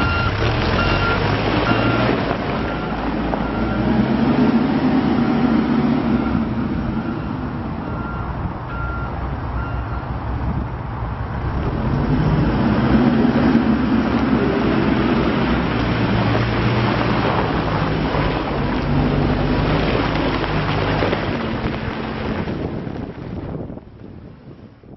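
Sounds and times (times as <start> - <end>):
diesel engine running: 0.0 - 23.8
wind on microphone: 10.2 - 24.9.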